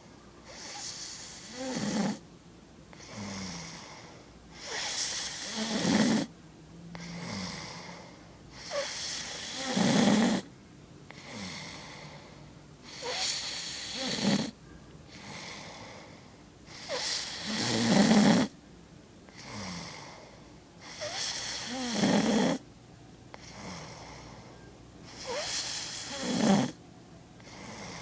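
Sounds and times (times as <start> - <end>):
quiet breathing: 0.0 - 2.2, 2.9 - 10.5, 11.1 - 18.6, 19.3 - 22.6, 23.3 - 26.8, 27.4 - 28.0
person snoring: 4.6 - 6.3, 7.0 - 10.5, 12.9 - 14.6, 16.7 - 18.5, 25.2 - 26.8.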